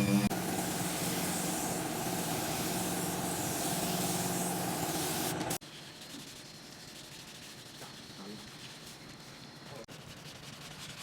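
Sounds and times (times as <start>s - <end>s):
compressed air hiss: 0.3s - 5.4s.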